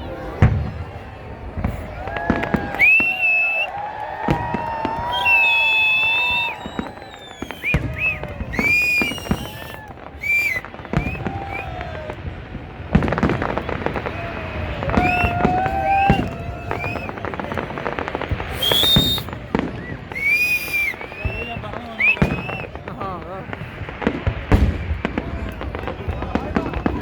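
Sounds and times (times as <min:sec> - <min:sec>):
fireworks bangs and crackling: 0:00.0 - 0:27.0
firework whistles: 0:01.6 - 0:27.0.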